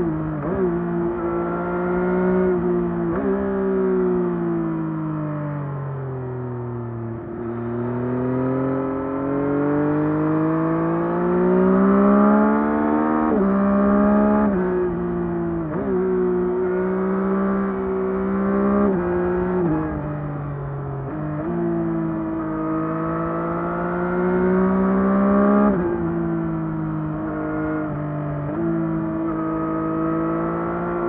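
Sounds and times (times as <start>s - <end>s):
motorcycle engine revving: 7.3s - 20.1s, 20.9s - 31.0s.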